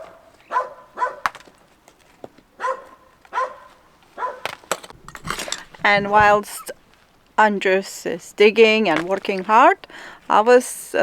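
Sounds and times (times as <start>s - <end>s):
dog barking: 0.0s - 1.3s, 2.6s - 4.6s.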